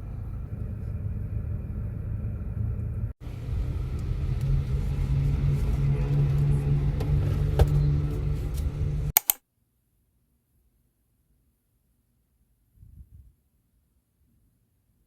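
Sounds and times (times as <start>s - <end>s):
car rumbling in motion: 0.0s - 9.1s.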